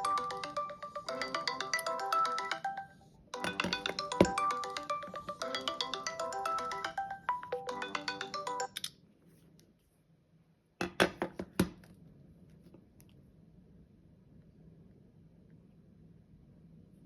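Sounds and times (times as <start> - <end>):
phone ringtone melody: 0.0 - 8.9.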